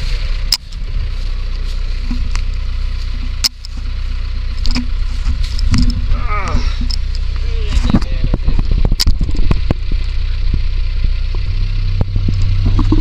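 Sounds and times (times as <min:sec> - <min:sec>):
vehicle engine idling: 0:00.0 - 0:13.0
sharp clicks: 0:02.3 - 0:03.8, 0:06.8 - 0:09.8.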